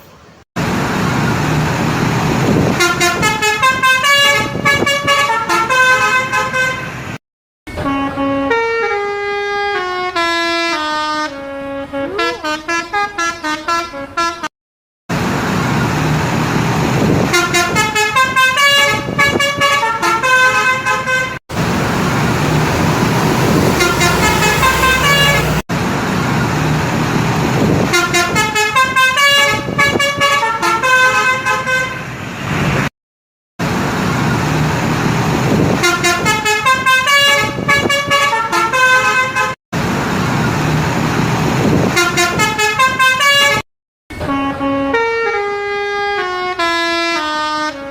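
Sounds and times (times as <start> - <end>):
engine and traffic noise: 0.0 - 7.2, 15.1 - 32.9, 33.6 - 43.6
bus horns tooting tunes: 2.8 - 7.0, 7.8 - 14.5, 17.3 - 25.6, 27.9 - 32.1, 35.8 - 39.6, 42.0 - 43.6, 44.2 - 47.7.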